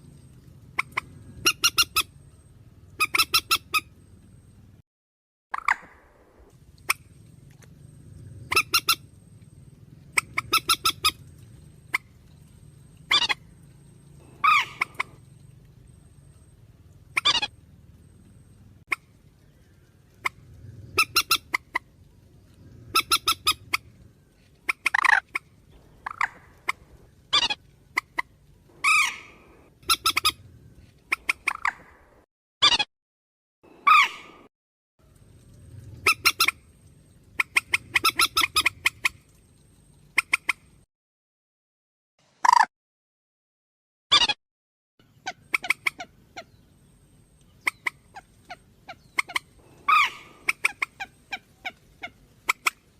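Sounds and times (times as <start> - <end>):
faint low hum: 0.0 - 4.8, 5.9 - 24.6, 25.4 - 32.2, 35.0 - 40.2
bird squawks and cackling: 0.7 - 2.1, 3.0 - 3.9, 8.5 - 9.1, 10.1 - 11.2, 14.3 - 15.2, 17.1 - 17.6, 20.2 - 21.8, 22.9 - 23.9, 24.6 - 30.5, 31.1 - 32.9, 33.8 - 34.5, 36.0 - 36.6, 37.4 - 39.2, 45.2 - 46.6, 47.6 - 52.8.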